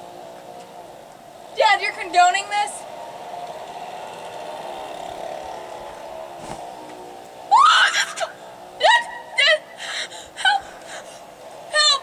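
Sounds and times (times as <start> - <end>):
woman shrieking: 7.5 - 11.1.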